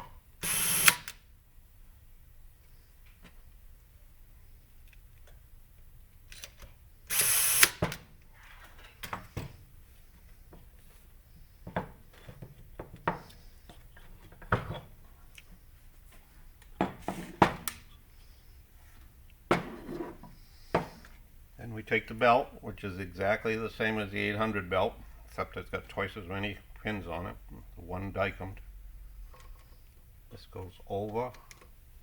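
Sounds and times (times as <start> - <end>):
power screwdriver running: 0.4 - 1.2, 7.1 - 7.9.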